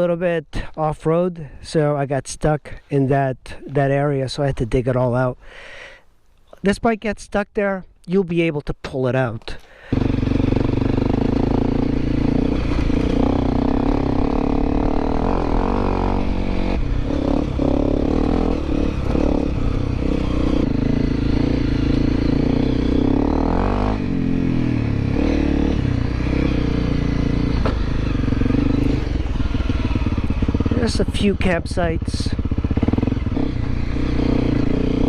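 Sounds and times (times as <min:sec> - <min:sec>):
motorcycle engine revving: 0:09.8 - 0:35.0.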